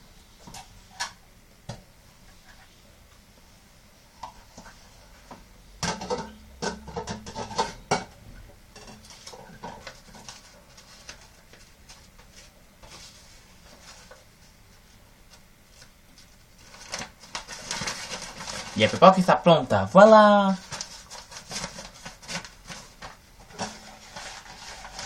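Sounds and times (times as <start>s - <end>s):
dishes and utensils clattering: 5.8s - 10.4s.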